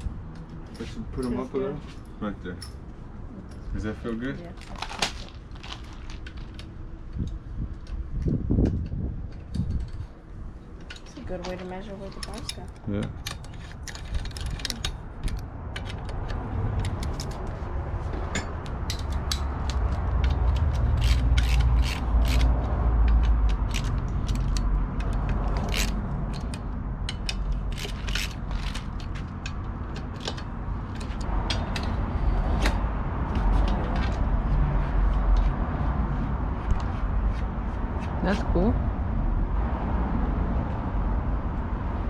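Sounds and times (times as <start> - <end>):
steady low rumble: 0.0 - 42.0
metallic clicks and ratcheting: 10.8 - 17.5, 18.3 - 34.3.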